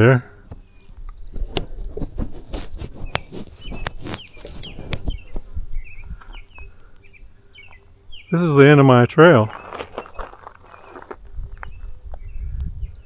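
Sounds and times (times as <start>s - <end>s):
insect trill: 0.0s - 13.0s
small bird chirping: 0.0s - 13.0s
footsteps knocking and scuffing: 1.3s - 5.6s.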